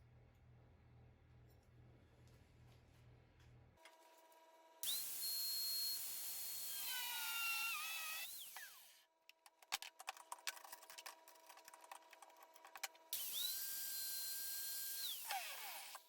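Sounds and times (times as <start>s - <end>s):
power tool whining: 4.8s - 9.0s, 13.1s - 16.0s.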